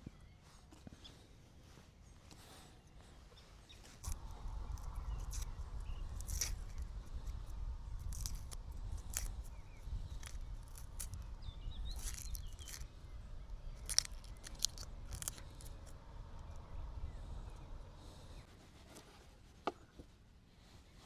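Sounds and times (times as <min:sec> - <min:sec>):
steady low rumble: 0:03.9 - 0:18.5.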